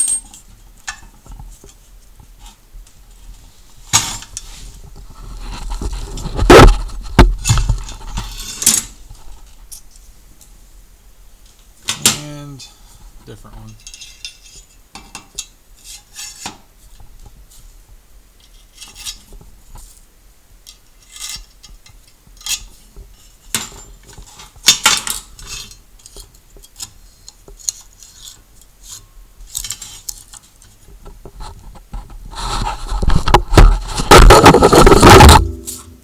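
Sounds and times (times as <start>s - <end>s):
metal parts clinking and scraping: 0.0s - 0.4s, 13.7s - 14.6s.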